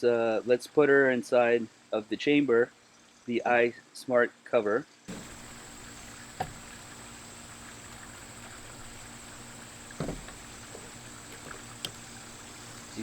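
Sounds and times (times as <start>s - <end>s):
steady background hiss: 0.0s - 13.0s
soft knock: 6.4s - 6.8s, 9.9s - 12.0s.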